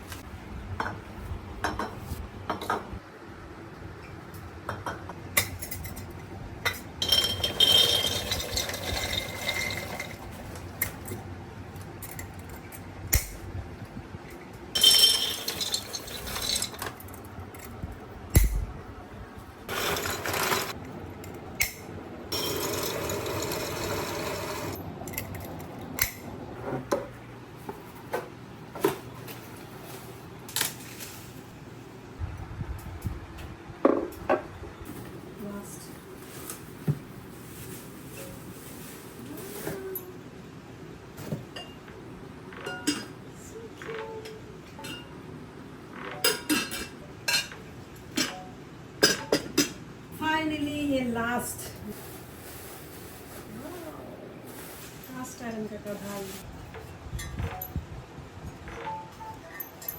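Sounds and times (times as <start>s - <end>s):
dishes and glassware clinking: 6.7s - 11.2s, 14.8s - 16.9s, 41.2s - 41.9s, 42.6s - 43.2s, 44.8s - 45.2s, 46.0s - 49.8s.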